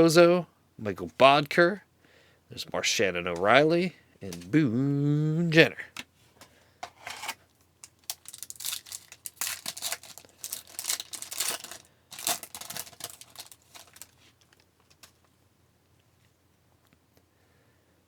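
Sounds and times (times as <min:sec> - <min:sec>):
wrapper tearing and crinkling: 0:07.0 - 0:15.2.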